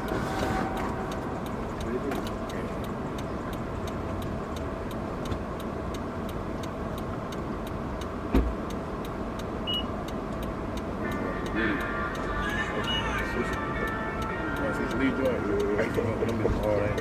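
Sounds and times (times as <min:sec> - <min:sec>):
traffic noise: 0:00.0 - 0:17.0
faint regular ticking: 0:00.6 - 0:17.0
short thump: 0:08.3 - 0:08.6.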